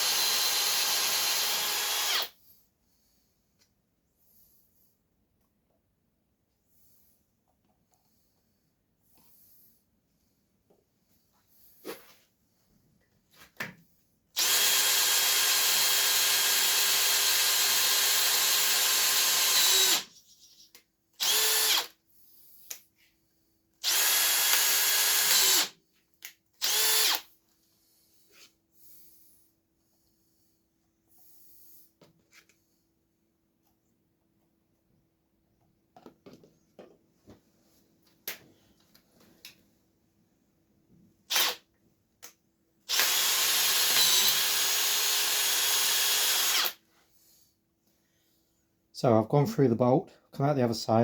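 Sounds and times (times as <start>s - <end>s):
electric drill boring through steel: 0.0s - 2.3s, 14.4s - 20.1s, 21.2s - 21.9s, 23.8s - 25.7s, 26.6s - 27.2s, 41.3s - 41.6s, 42.9s - 46.8s.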